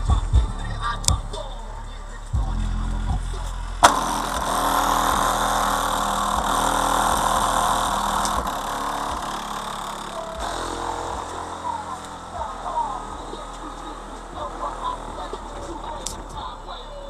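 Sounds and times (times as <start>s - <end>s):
car engine idling: 0.0s - 17.0s
click: 8.2s - 8.4s.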